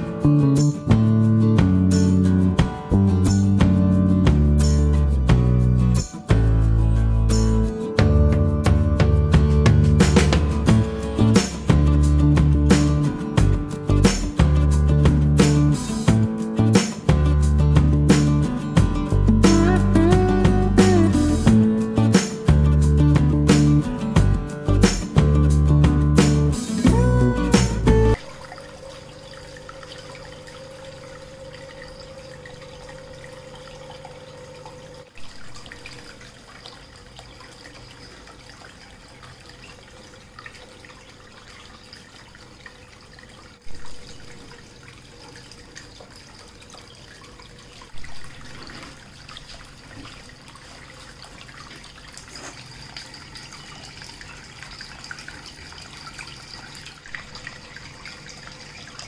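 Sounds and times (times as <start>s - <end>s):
water trickling down fountain: 28.1s - 59.0s.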